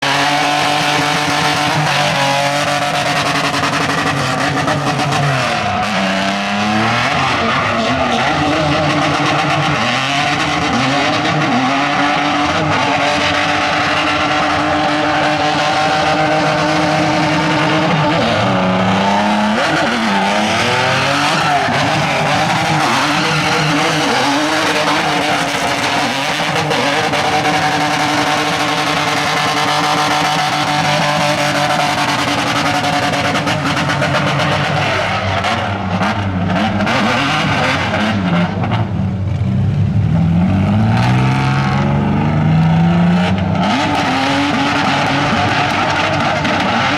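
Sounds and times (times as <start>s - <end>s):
car engine at high revs: 0.0s - 46.9s
tyres squealing: 15.4s - 31.4s.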